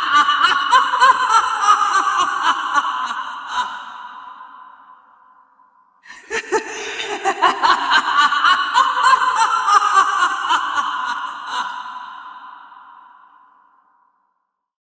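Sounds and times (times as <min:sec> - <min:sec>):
woman laughing devilishly: 0:00.0 - 0:04.2, 0:06.1 - 0:12.7.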